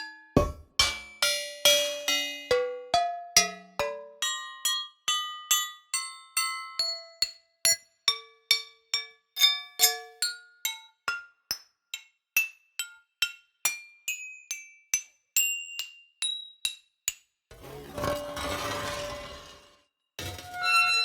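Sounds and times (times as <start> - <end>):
iron pieces clanking: 17.5 - 21.0.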